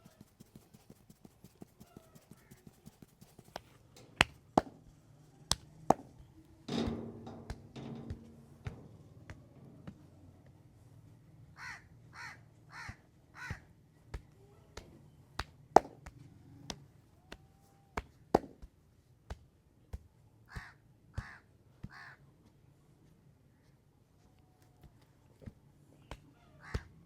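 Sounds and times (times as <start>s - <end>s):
massage cracks and slaps: 3.3s - 4.9s, 5.5s - 6.2s, 14.1s - 20.7s
bird harsh calls: 11.6s - 13.6s.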